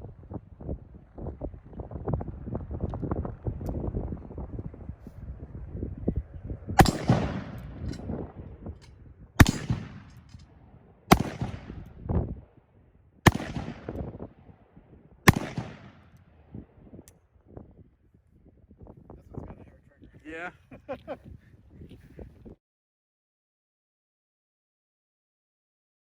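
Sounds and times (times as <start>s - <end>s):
revolver shots with echo: 6.8s - 7.8s, 11.1s - 11.8s, 15.3s - 15.9s.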